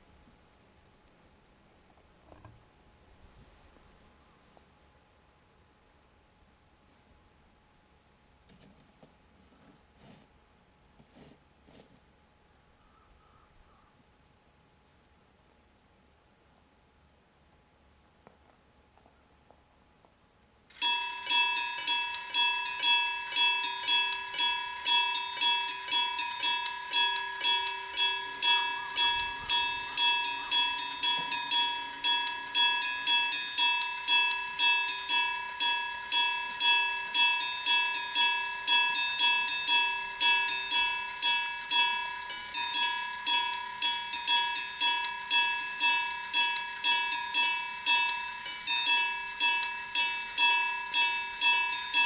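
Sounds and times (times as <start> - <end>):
level crossing bell ringing: 20.8 - 52.0.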